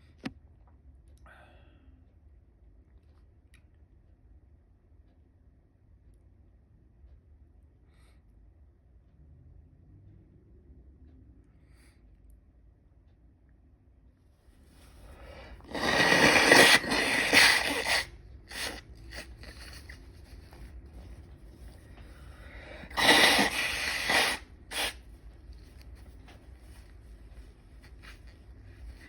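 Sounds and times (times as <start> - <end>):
person sneezing loudly: 22.9 - 25.0.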